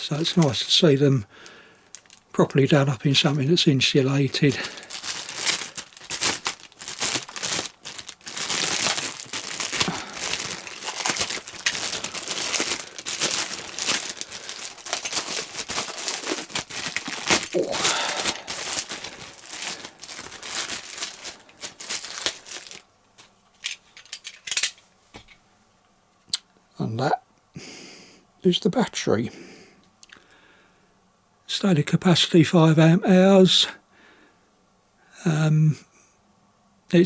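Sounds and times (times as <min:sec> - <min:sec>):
plastic wrapping crinkling: 0:00.0 - 0:24.8.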